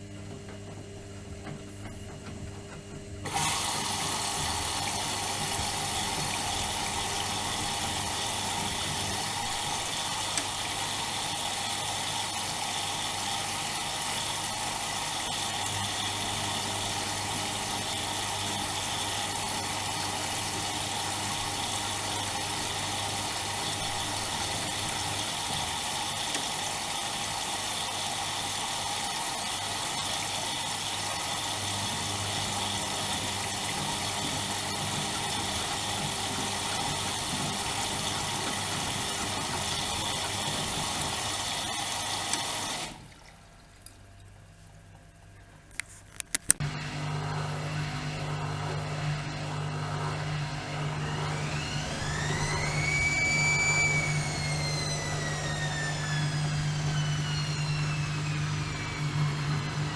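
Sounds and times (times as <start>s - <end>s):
washing machine hum: 0.0s - 59.9s
water rushing into machine: 3.2s - 44.4s, 46.6s - 59.9s.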